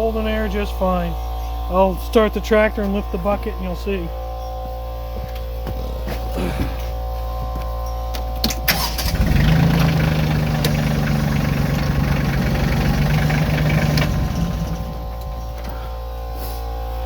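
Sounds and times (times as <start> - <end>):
tractor engine idling: 8.7 - 16.1.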